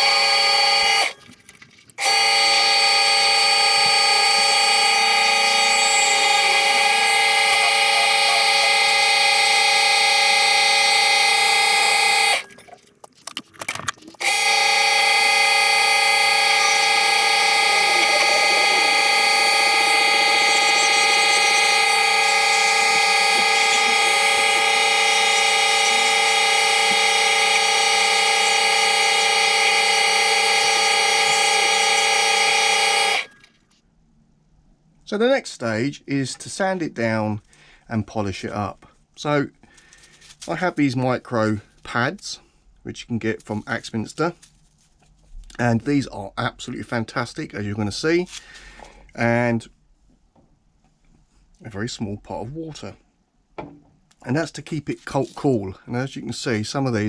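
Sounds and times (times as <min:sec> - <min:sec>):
lathe whining at speed: 0:00.0 - 0:01.2, 0:02.0 - 0:12.5, 0:14.2 - 0:33.3
chisel turning acrylic: 0:00.0 - 0:33.5.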